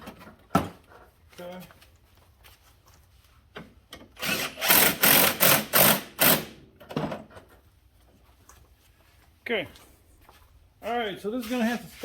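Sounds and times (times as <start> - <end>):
power drill bursts: 4.2 - 6.6.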